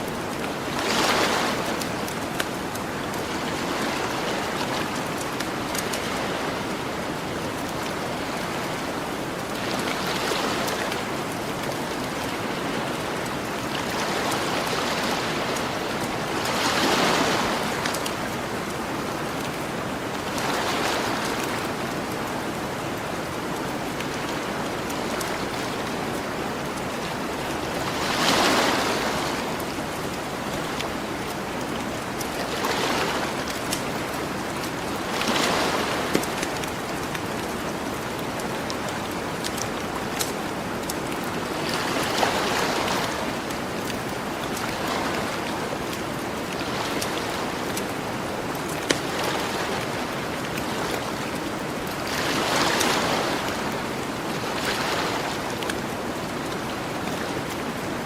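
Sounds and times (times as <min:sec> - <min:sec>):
ocean waves washing on beach: 0:00.0 - 0:58.0.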